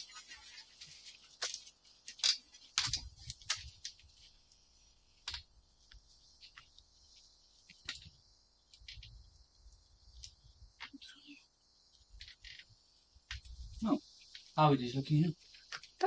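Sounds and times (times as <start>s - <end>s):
faint steady hiss: 0.0s - 16.0s.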